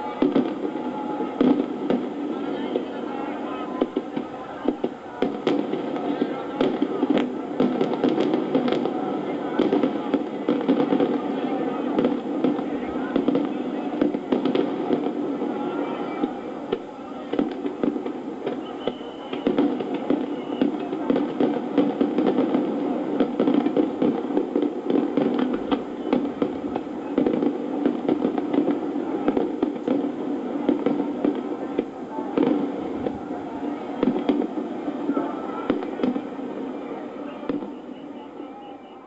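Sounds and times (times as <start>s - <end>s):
fireworks bursting and crackling: 0.0s - 39.0s.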